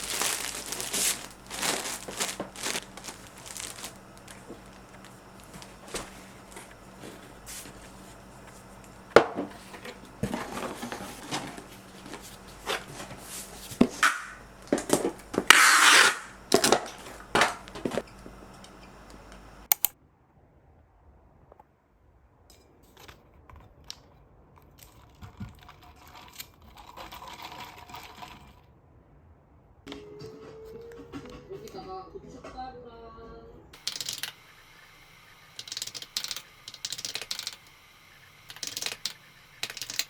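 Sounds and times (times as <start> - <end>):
rustling and crinkling: 0.0 - 19.6
loud tearing rasp: 15.5 - 16.8
sharp clicks: 18.6 - 20.0, 35.6 - 37.8.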